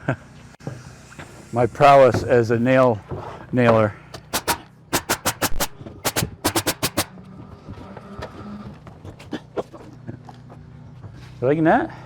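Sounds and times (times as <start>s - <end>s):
hammer nailing on roof: 4.2s - 7.1s.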